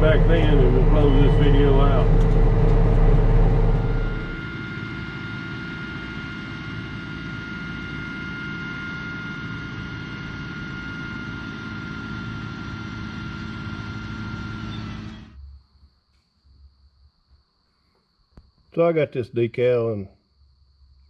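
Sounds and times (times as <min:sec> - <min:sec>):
vehicle running noise: 0:00.0 - 0:06.0
constant high whine: 0:00.0 - 0:21.0.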